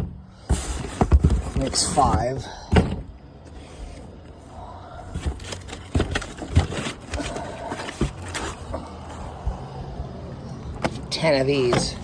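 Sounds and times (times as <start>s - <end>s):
packaging rustling: 5.0s - 9.7s
parts knocking and clicking: 5.1s - 9.6s.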